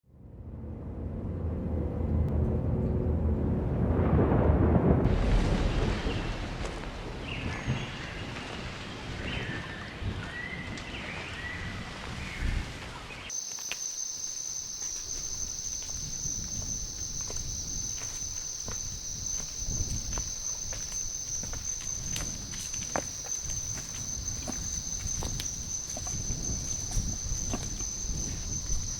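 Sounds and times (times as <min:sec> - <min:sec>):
low rumbling wash: 0:00.3 - 0:13.2
high insect drone: 0:13.3 - 0:28.9.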